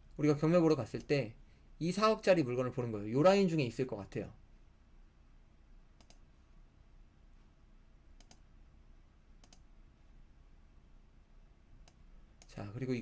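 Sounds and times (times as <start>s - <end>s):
computer mouse double clicks: 6.0s - 6.2s, 9.4s - 9.6s.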